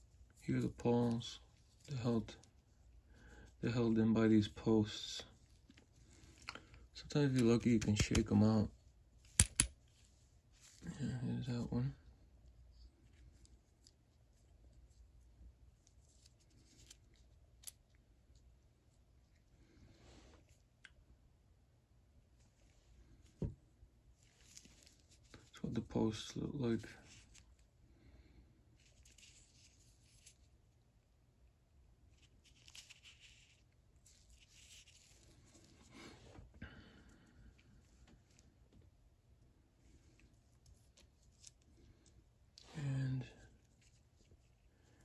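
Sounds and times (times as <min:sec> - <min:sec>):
faint handling rustling: 0:22.3 - 0:30.8, 0:32.0 - 0:45.0.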